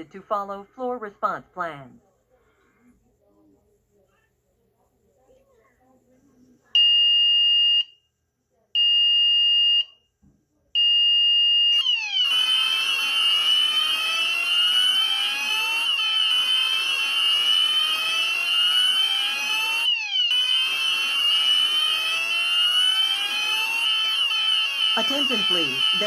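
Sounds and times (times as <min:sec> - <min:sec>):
fire alarm high beep: 0:06.8 - 0:08.0, 0:08.8 - 0:10.0, 0:10.8 - 0:26.0
fire alarm rising whoop sweeps: 0:11.7 - 0:26.0.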